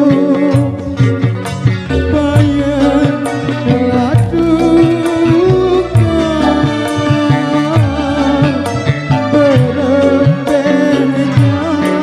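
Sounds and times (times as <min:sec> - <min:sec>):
sustained melody line: 0:00.0 - 0:12.0.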